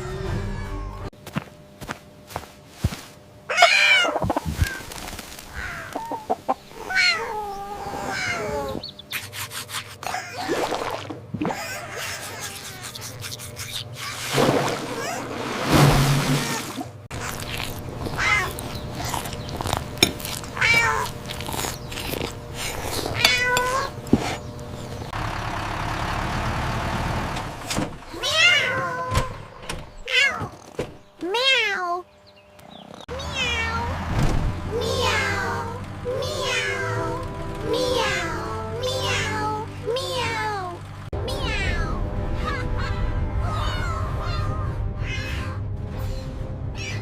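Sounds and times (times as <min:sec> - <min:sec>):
cat meowing: 0:03.5 - 0:04.8, 0:06.8 - 0:08.8, 0:23.2 - 0:23.9, 0:28.2 - 0:29.1, 0:43.6 - 0:45.6, 0:46.8 - 0:47.0.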